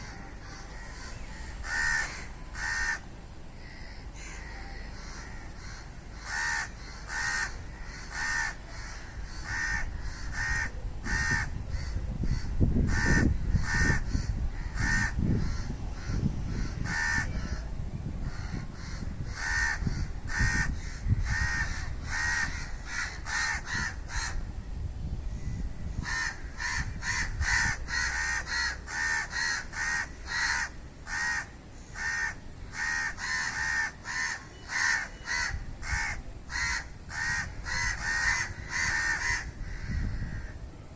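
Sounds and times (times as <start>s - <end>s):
crows cawing: 0.0s - 17.6s, 18.3s - 24.4s, 25.4s - 40.6s.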